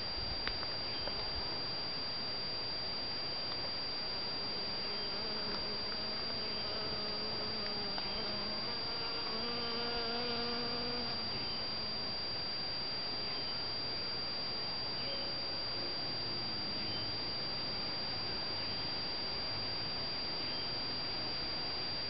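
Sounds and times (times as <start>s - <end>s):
bee wings buzzing: 4.5s - 12.0s.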